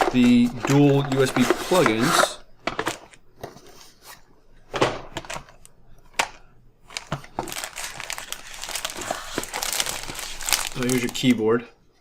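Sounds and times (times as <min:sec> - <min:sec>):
plastic wrapper crinkling: 0:06.8 - 0:11.5.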